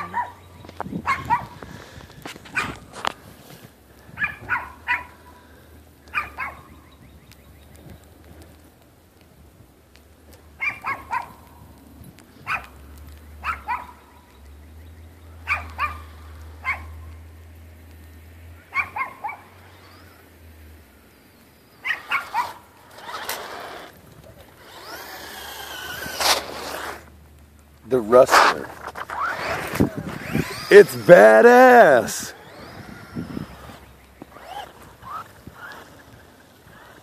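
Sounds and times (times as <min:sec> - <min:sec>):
dog barking: 0:00.0 - 0:00.4, 0:01.0 - 0:01.6, 0:04.2 - 0:05.4, 0:06.1 - 0:06.7, 0:10.6 - 0:11.4, 0:12.5 - 0:12.7, 0:13.4 - 0:14.0, 0:15.4 - 0:16.9, 0:18.7 - 0:19.5.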